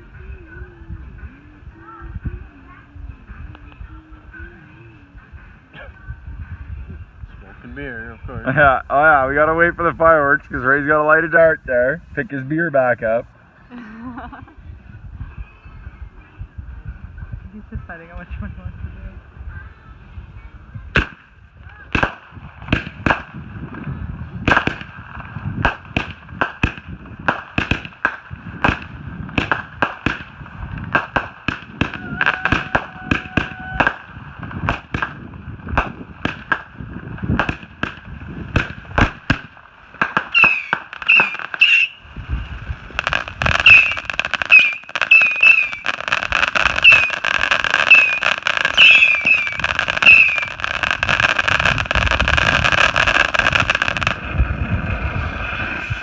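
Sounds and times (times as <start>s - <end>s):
fireworks bangs and crackles: 20.8s - 56.0s
fireworks whistling squeals: 40.3s - 42.4s, 43.0s - 54.0s.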